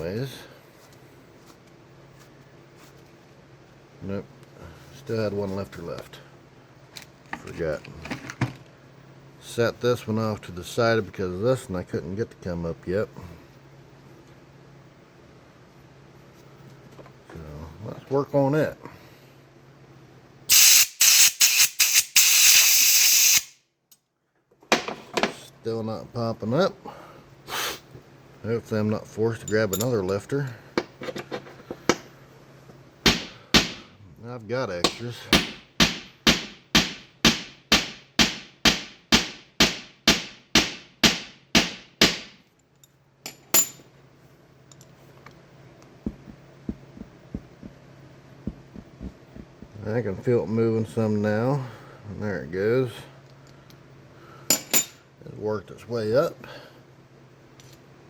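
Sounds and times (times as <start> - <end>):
pressurised spray hissing: 20.5 - 23.5.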